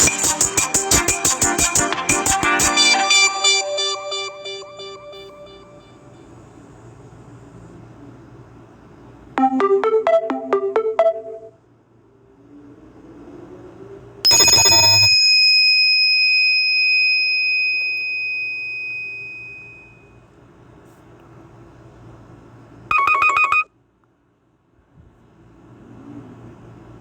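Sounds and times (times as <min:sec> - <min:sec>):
bell-like phone chime: 0:02.7 - 0:05.9, 0:14.3 - 0:19.9
rapid phone beeps: 0:14.3 - 0:15.2, 0:22.9 - 0:23.7.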